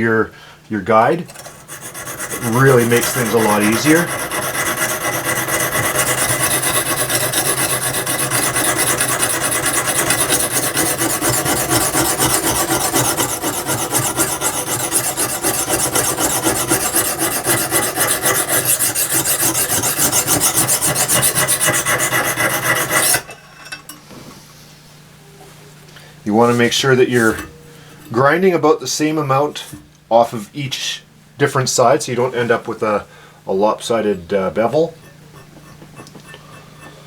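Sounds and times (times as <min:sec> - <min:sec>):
hone rasping on steel blade: 0:01.3 - 0:23.3, 0:34.6 - 0:37.0.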